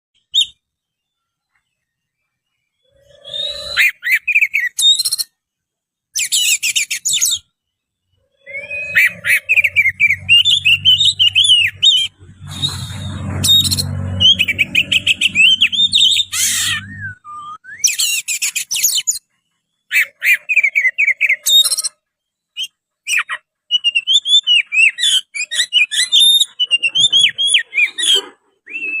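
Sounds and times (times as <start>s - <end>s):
bird singing whistled phrases: 0.2s - 0.6s, 2.8s - 5.4s, 6.2s - 7.5s, 8.3s - 19.3s, 19.9s - 29.0s
low hum: 8.1s - 17.8s.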